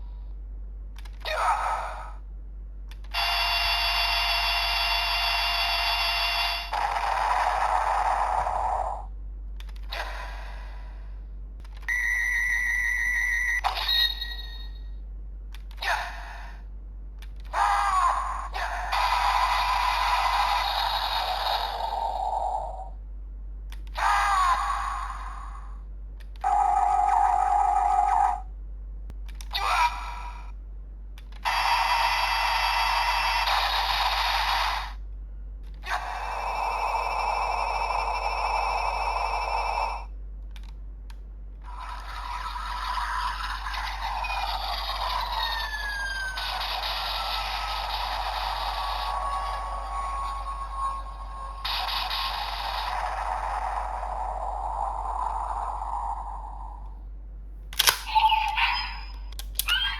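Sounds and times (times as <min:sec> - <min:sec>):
buzzing electronic tone: 0:03.1 - 0:09.0
toy electronic sound effects: 0:03.1 - 0:09.1, 0:11.9 - 0:14.8, 0:17.5 - 0:22.9, 0:23.9 - 0:25.6, 0:29.5 - 0:30.3, 0:31.4 - 0:35.0, 0:35.8 - 0:40.1, 0:41.6 - 0:56.8, 0:57.8 - 0:59.9
toy clicks: 0:41.7 - 0:54.4, 0:57.7 - 0:59.9.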